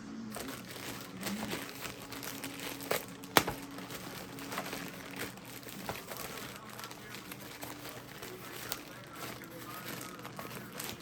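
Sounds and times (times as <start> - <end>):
packaging crinkling and rustling: 0.3 - 11.0.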